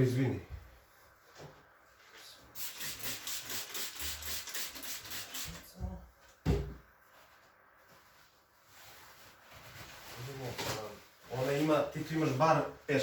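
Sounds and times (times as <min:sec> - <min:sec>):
loud thump: 0:06.4 - 0:06.8.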